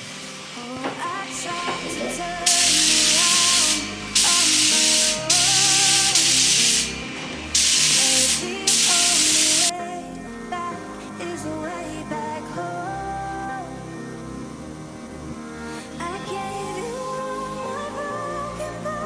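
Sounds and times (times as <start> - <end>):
music: 0.0 - 19.0
paint spray gun hissing: 2.5 - 7.0, 7.6 - 9.7.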